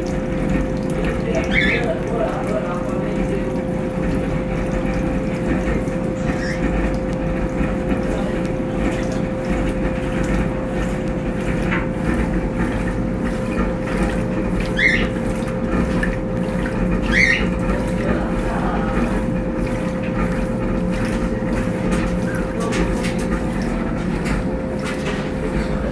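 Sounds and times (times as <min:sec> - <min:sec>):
washing machine hum: 0:00.0 - 0:25.9
water churning and sloshing: 0:00.0 - 0:25.9.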